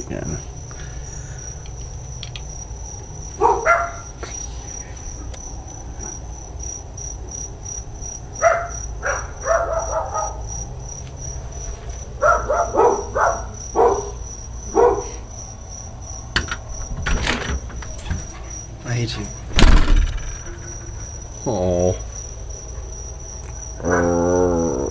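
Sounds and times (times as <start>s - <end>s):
crickets trilling: 0.0s - 24.9s
dogs barking: 3.3s - 4.2s, 8.4s - 10.6s, 12.1s - 15.3s, 23.8s - 24.4s.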